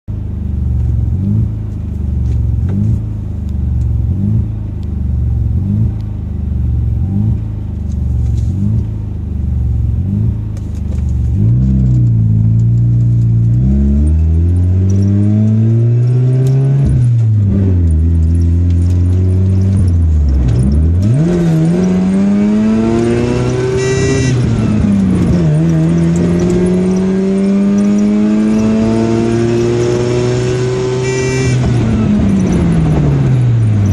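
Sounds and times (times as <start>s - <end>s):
rotary engine idling and revving: 0.1s - 33.9s.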